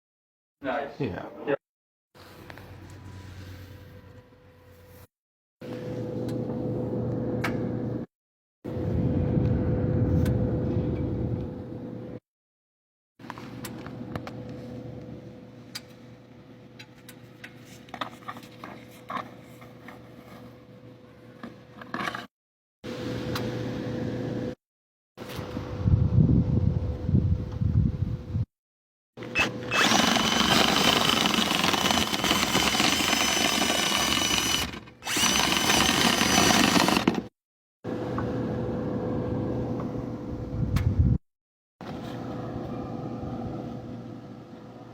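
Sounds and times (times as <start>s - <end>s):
power drill whining: 29.4s - 37.3s
steady mechanical hum: 37.9s - 41.2s.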